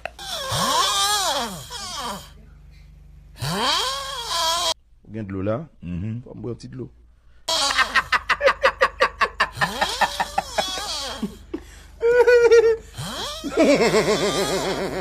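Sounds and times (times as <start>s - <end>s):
person laughing hard: 7.5s - 15.0s.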